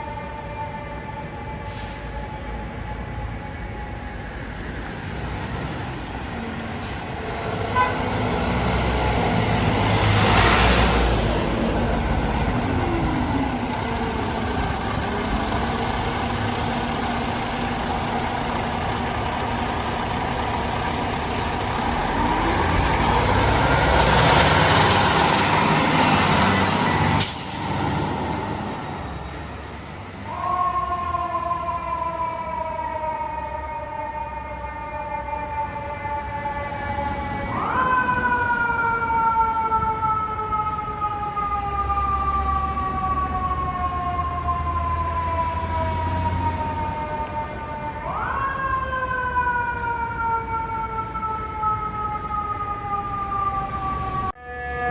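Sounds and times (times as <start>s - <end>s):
siren: 0.0s - 54.9s
heavy truck diesel engine: 1.6s - 3.1s, 4.0s - 31.0s, 36.0s - 48.7s
air brakes hissing: 1.7s - 2.2s, 27.0s - 27.9s.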